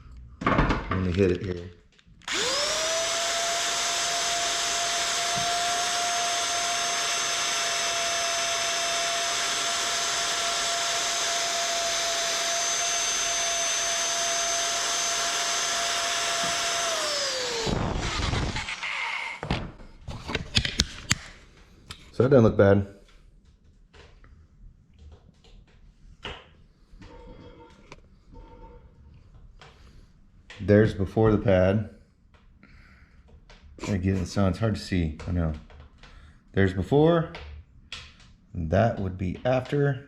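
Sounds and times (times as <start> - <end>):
power tool motor whine: 2.2 - 19.4.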